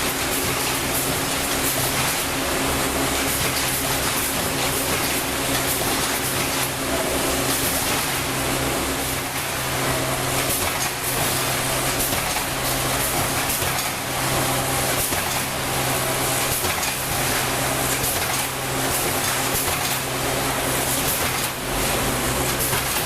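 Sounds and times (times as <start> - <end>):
machine motor hum: 6.7 - 23.0.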